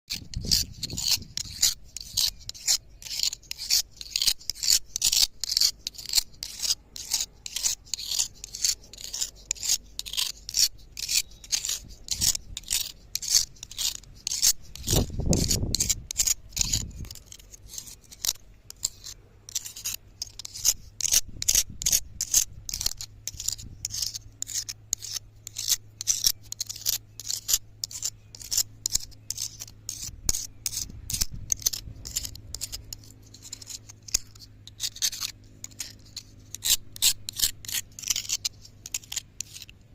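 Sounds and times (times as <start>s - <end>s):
blade scraping on sharpening stone: 0.1s - 39.9s.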